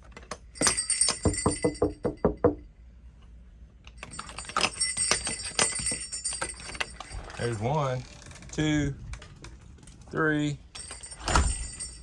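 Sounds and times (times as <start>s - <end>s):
light metal jingling: 0.4s - 2.4s, 3.9s - 12.0s.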